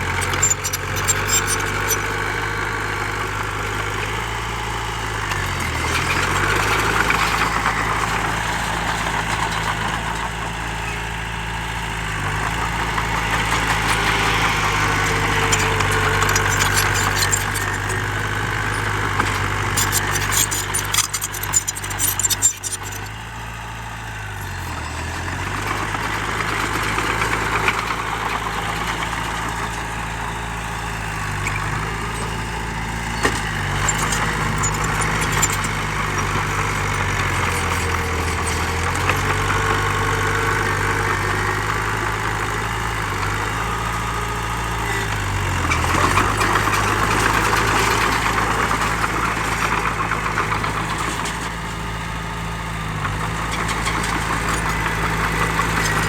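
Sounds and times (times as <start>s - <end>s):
heavy diesel engine running: 0.0s - 56.0s
sharp clatter: 13.2s - 23.1s.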